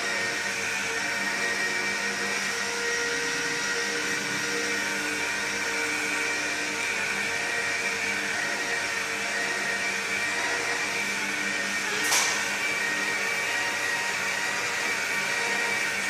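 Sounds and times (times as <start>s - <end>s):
polishing machine whining: 0.0s - 16.0s.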